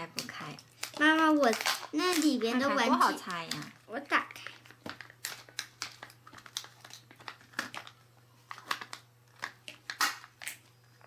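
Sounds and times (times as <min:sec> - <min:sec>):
foil wrapper crinkling: 0:00.0 - 0:11.0.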